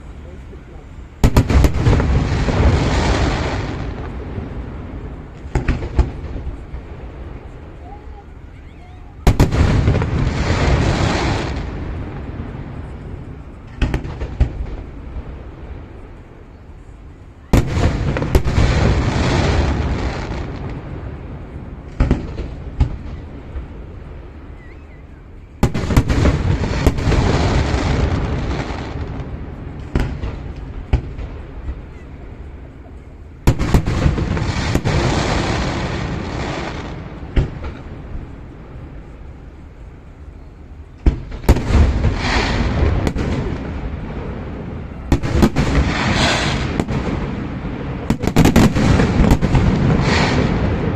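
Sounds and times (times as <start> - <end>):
fireworks booming: 0.0 - 50.9
sharp firework bangs: 1.2 - 7.0, 9.2 - 15.0, 17.5 - 21.1, 21.8 - 23.7, 25.6 - 32.0, 33.4 - 38.0, 41.0 - 50.9.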